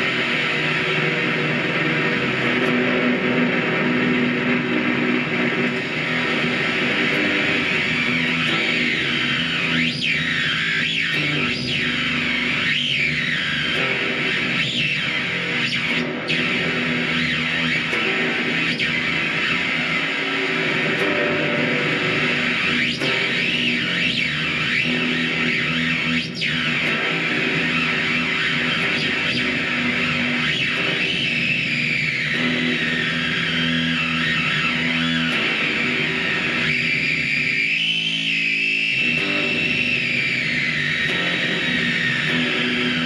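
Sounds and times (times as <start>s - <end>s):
fuzzed electric guitar: 0.0s - 43.0s.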